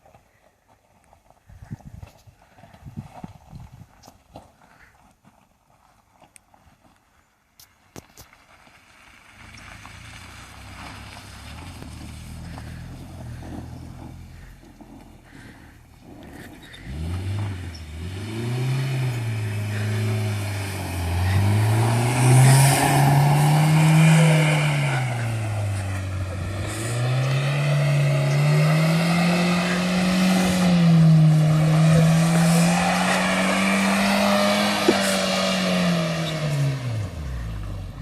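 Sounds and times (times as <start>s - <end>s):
car engine revving: 9.3s - 38.0s.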